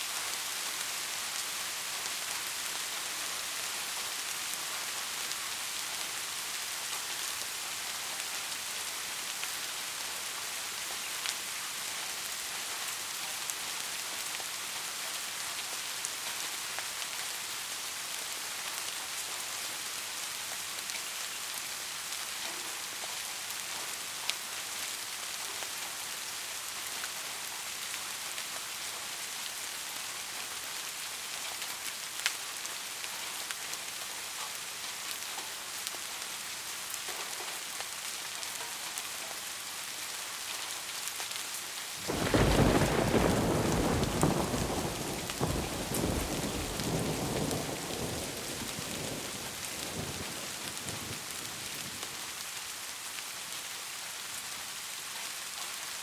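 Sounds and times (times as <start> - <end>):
rain on a roof: 0.0 - 56.0.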